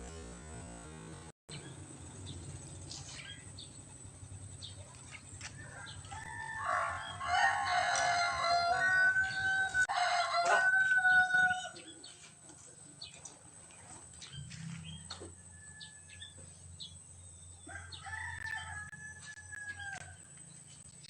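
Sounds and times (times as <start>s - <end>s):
rooster crowing: 5.4s - 12.0s, 15.0s - 16.4s, 17.6s - 20.3s.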